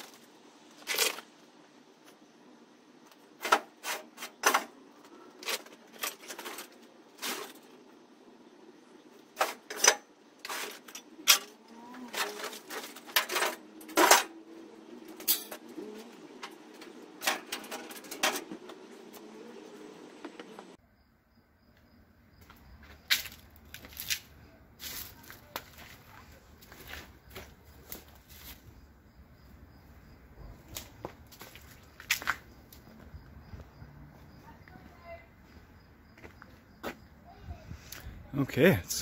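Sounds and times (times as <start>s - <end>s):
scrap metal clanking: 3.4s - 7.7s, 9.3s - 14.4s, 15.1s - 18.8s.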